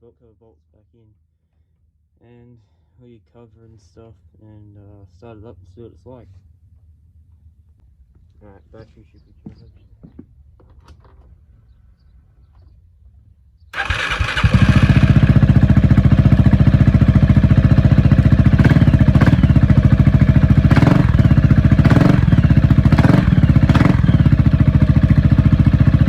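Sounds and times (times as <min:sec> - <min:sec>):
scooter engine starting and idling: 0:13.8 - 0:26.0.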